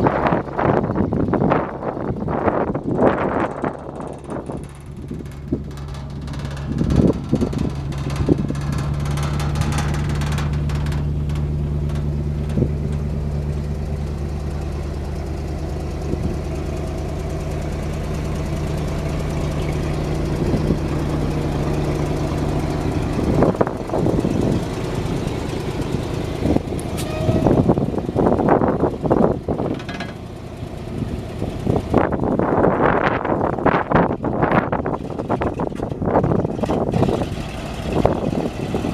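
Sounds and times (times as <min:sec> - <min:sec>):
truck engine idling: 0:00.0 - 0:38.9
knocks and clunks: 0:02.8 - 0:32.6.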